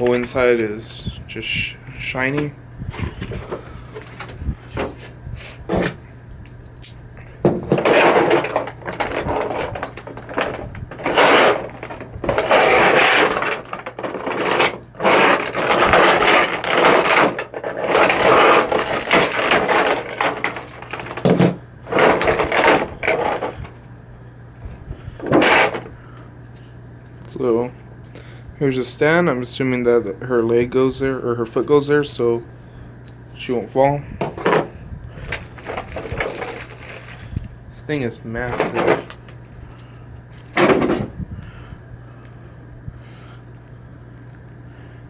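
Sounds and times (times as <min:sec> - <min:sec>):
cardboard and plastic rustling: 0:00.0 - 0:00.9, 0:01.5 - 0:24.0, 0:24.6 - 0:27.9, 0:33.1 - 0:41.4
low steady hum: 0:00.0 - 0:45.0.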